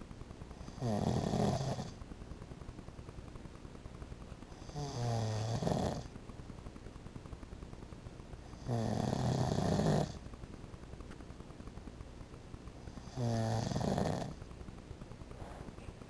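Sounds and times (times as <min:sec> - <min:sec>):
man snoring: 0:00.6 - 0:02.0, 0:04.6 - 0:06.1, 0:08.6 - 0:10.2, 0:12.9 - 0:14.4.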